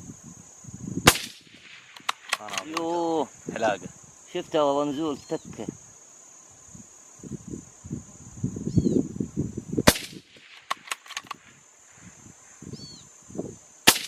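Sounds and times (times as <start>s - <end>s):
crickets trilling: 0.0s - 14.0s
rifle shot crack: 1.1s - 2.9s, 9.9s - 11.5s.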